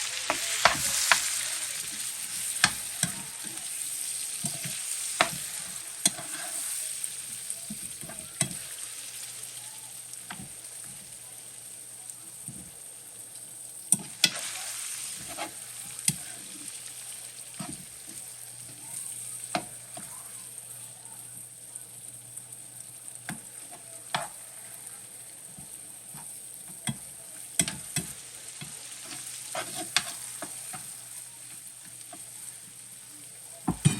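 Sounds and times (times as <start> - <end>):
fish sizzling in a frying pan: 0.0 - 33.9
utensil scraping a pan: 4.4 - 6.8, 15.2 - 15.6, 28.6 - 30.9.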